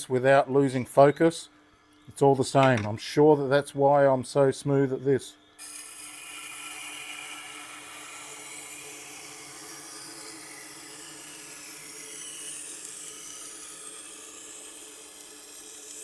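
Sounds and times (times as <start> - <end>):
knife grinding on wheel: 5.6 - 16.0.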